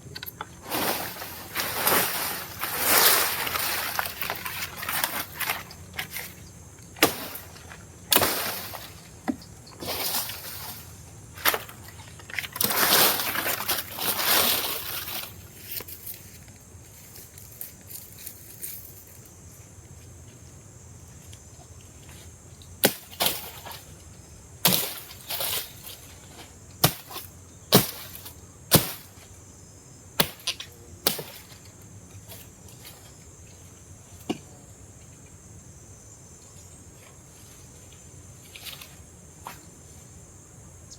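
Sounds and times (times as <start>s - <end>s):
rustling: 0.0s - 19.2s
sharp knocks and cracks: 2.7s - 10.4s, 22.8s - 23.9s, 26.8s - 29.2s, 30.2s - 31.7s.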